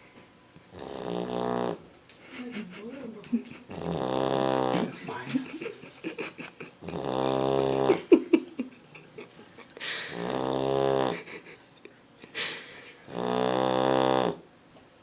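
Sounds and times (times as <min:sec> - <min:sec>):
puppy snoring loudly: 0:00.7 - 0:01.9, 0:03.6 - 0:05.4, 0:06.0 - 0:09.3, 0:09.9 - 0:11.5, 0:13.0 - 0:14.5.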